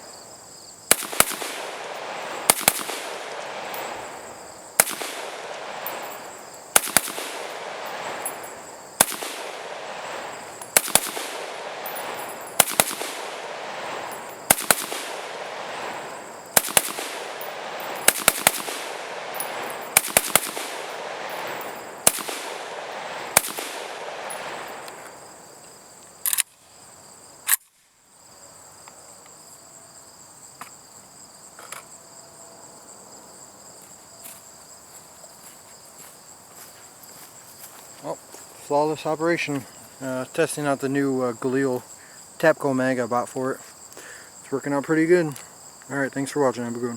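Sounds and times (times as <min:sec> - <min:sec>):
insects trilling: 0:00.0 - 0:46.9
rifle shots with ringing echo: 0:00.9 - 0:25.4.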